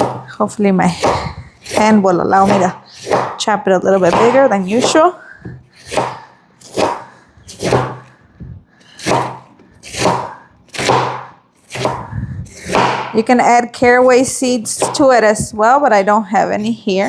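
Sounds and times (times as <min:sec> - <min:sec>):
knife chopping cabbage: 0:00.0 - 0:00.3, 0:00.9 - 0:08.2, 0:08.9 - 0:13.2, 0:13.8 - 0:15.5.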